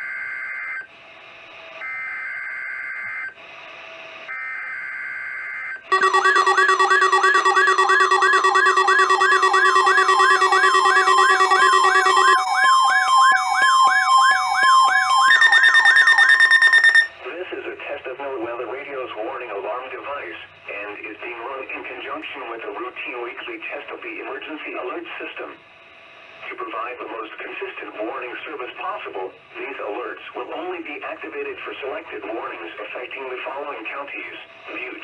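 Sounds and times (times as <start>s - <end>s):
buzzing digital data bursts: 5.9s - 17.1s
electronic warbling alert alarm: 5.9s - 17.1s.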